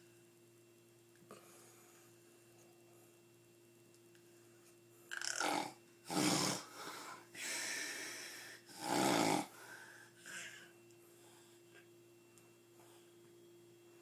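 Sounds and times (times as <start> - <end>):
person snoring heavily: 5.1 - 6.8, 8.7 - 9.6.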